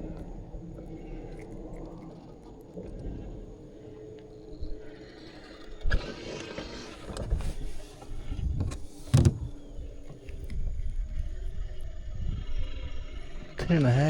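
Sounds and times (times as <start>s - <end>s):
knocks and rustling in boat: 4.6s - 11.1s
sharp thumps: 7.1s - 9.9s.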